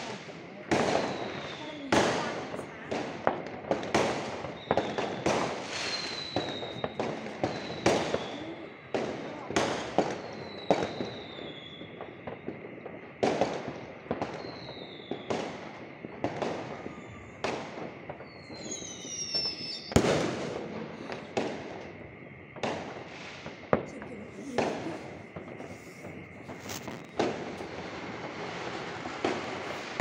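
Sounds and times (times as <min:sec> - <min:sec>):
fireworks bangs: 0:00.0 - 0:30.0
falling whistles: 0:00.8 - 0:01.8, 0:04.5 - 0:08.4, 0:10.2 - 0:12.0, 0:18.2 - 0:21.4.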